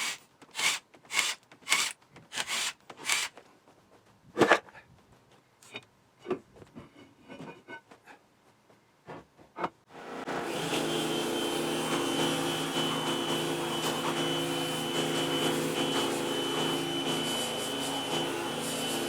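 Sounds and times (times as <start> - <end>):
pressure washer motor humming: 10.0 - 19.0.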